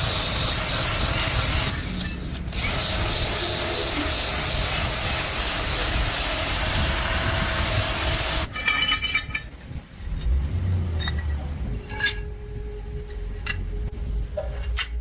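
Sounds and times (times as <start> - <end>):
power tool hissing: 0.0 - 8.5
low rumble: 8.8 - 15.0.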